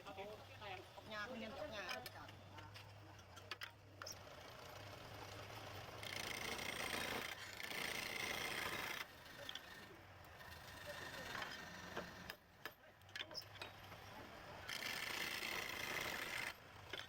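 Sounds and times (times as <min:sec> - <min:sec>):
lathe motor humming: 0:05.3 - 0:12.4, 0:14.7 - 0:17.0
hissing scrape of wood cutting: 0:07.6 - 0:12.4.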